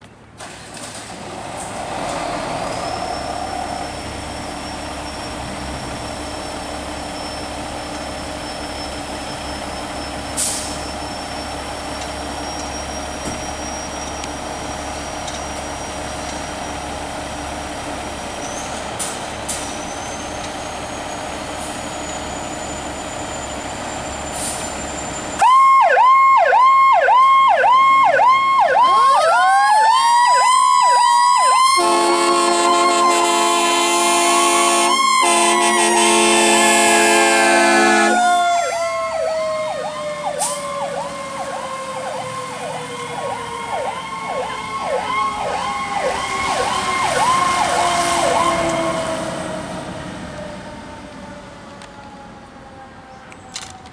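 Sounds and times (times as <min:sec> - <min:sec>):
truck high whine: 0:00.0 - 0:53.9
electronic siren yelp and wail: 0:25.4 - 0:49.3.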